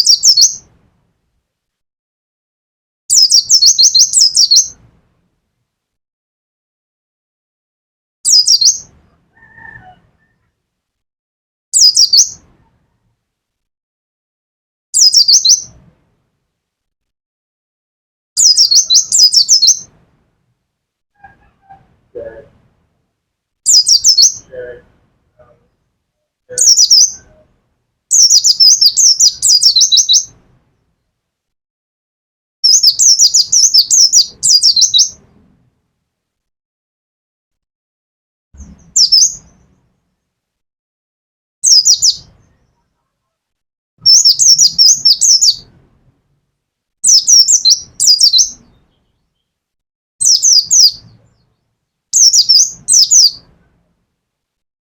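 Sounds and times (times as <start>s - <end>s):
bird whistling song: 0.0s - 0.7s, 3.1s - 4.8s, 8.3s - 10.4s, 11.8s - 12.4s, 15.0s - 15.8s, 18.4s - 19.9s, 23.7s - 24.5s, 26.5s - 27.4s, 28.1s - 30.4s, 32.6s - 35.2s, 38.6s - 39.6s, 41.6s - 42.8s, 44.0s - 45.7s, 47.0s - 49.5s, 50.2s - 51.1s, 52.2s - 53.5s.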